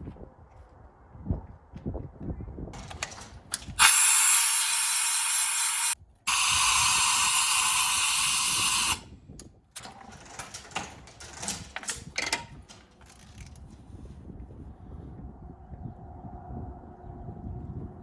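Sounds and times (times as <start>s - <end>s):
loud steady hiss: 3.8s - 9.0s.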